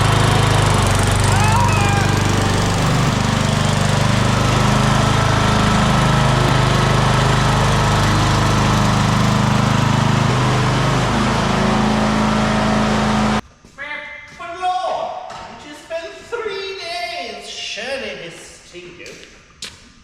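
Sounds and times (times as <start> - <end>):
riding mower engine running: 0.0 - 13.4.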